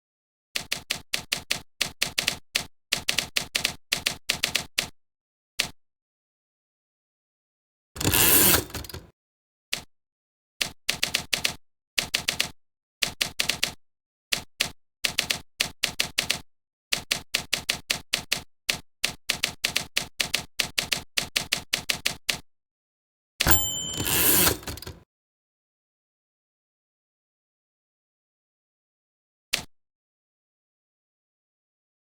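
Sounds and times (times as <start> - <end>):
typewriter keys clicking: 0.6 - 4.9.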